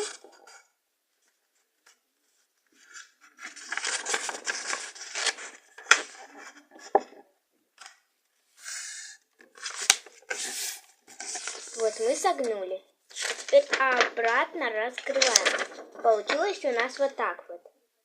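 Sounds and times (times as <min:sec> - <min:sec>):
paper rustling and crackling: 0:01.2 - 0:07.2, 0:09.4 - 0:17.5.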